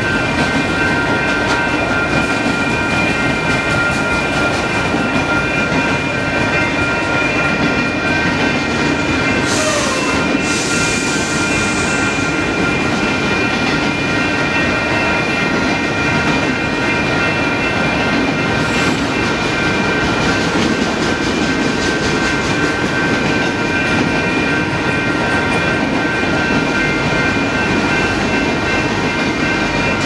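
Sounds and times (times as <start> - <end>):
freight train wheels rumbling: 0.0 - 30.0
high wheel squeal: 9.4 - 12.4.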